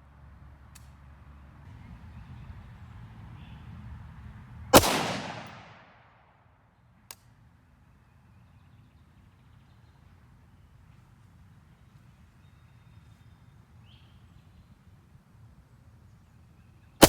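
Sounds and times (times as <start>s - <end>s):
rifle gunshot with echo: 4.8s - 6.0s.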